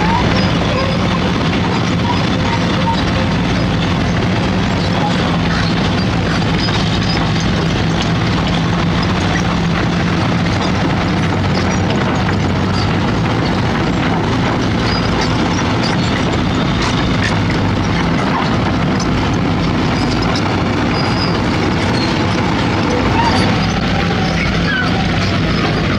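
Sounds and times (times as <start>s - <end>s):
heavy diesel machinery running: 0.0s - 25.9s.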